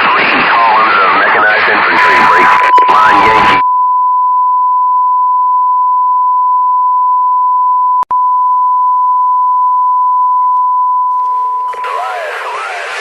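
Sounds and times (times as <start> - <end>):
electronic beep tone: 2.4 - 12.0.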